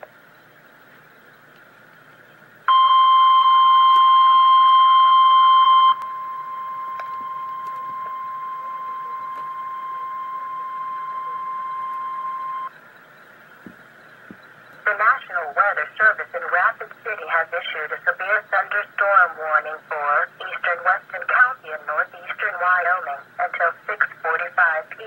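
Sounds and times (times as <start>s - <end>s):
faint radio hiss: 0.0s - 25.0s
weather alert alarm tone: 2.7s - 13.2s.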